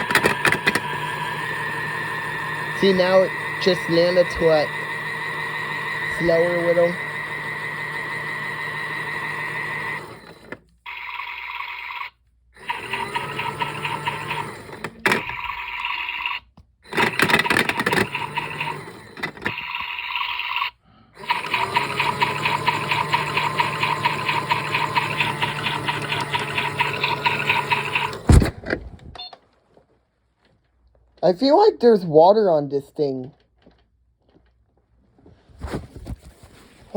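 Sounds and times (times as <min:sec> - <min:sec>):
toy motor whirring and rattling: 0:00.0 - 0:28.3.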